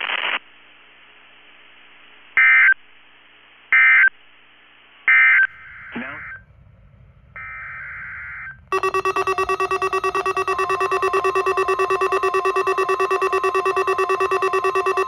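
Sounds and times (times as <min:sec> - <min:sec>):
pulsing electronic alert tone: 0:08.7 - 0:15.0.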